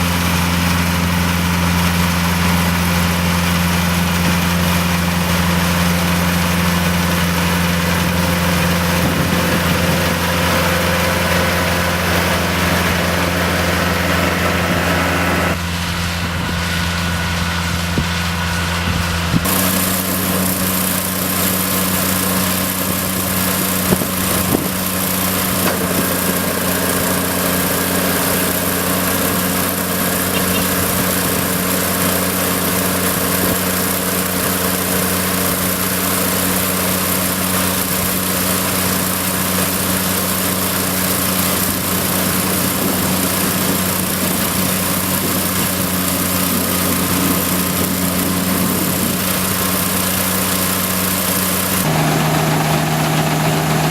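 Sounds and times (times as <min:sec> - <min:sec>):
harvesting machine engine running: 0:00.0 - 0:53.9.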